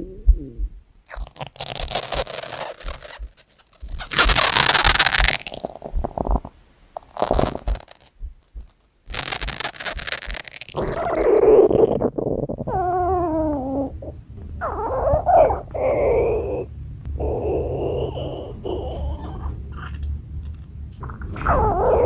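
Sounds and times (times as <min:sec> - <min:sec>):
stomach growling: 0:00.0 - 0:08.2, 0:09.1 - 0:22.0.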